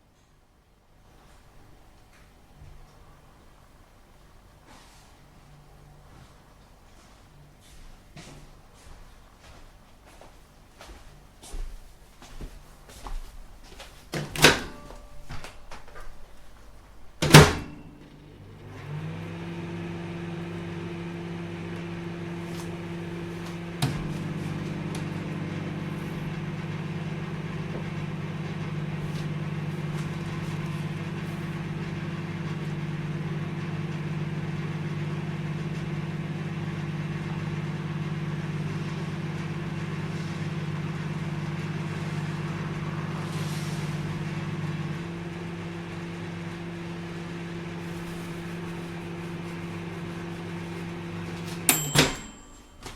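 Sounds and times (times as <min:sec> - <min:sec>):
microwave oven humming: 0:12.9 - 0:52.9
microwave oven clicks: 0:14.1 - 0:16.1, 0:17.2 - 0:19.8, 0:21.6 - 0:42.8, 0:50.4 - 0:52.9.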